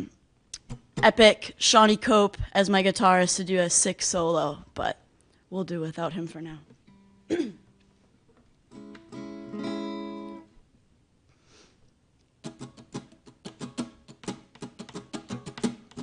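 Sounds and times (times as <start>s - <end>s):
acoustic guitar strumming: 6.8s - 8.0s, 8.7s - 10.5s, 12.4s - 16.0s.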